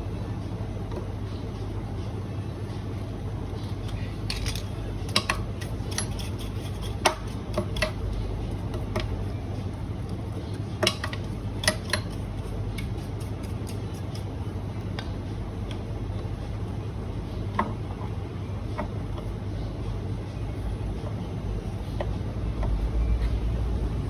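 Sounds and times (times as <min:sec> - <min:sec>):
steady low hum: 0:00.0 - 0:24.0
grinder parts clicking and clinking: 0:04.3 - 0:06.2.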